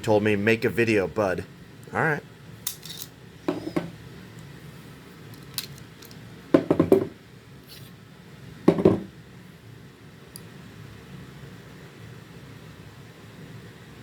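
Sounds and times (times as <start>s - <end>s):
pistol parts clicking and clacking: 2.6s - 3.2s, 5.4s - 6.2s.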